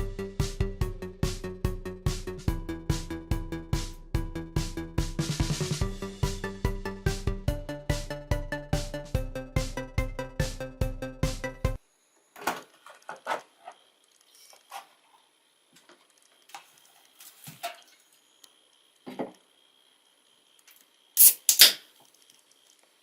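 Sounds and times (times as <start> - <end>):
loud sharp clicks: 21.2 - 21.8.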